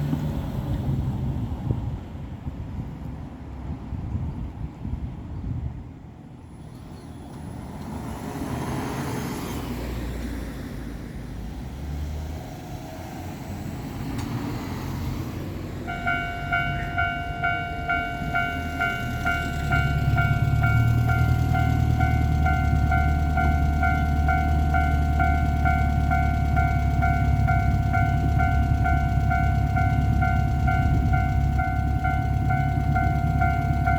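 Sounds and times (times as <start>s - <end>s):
road vehicle passing: 6.6s - 33.9s
level-crossing bell dinging: 15.8s - 33.9s.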